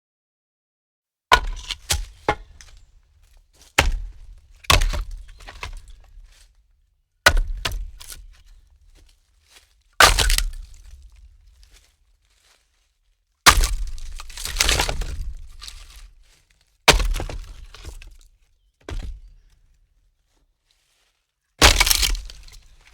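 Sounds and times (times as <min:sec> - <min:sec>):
wooden logs clattering: 0:01.3 - 0:06.5, 0:07.3 - 0:11.9, 0:13.5 - 0:19.4, 0:21.6 - 0:22.9.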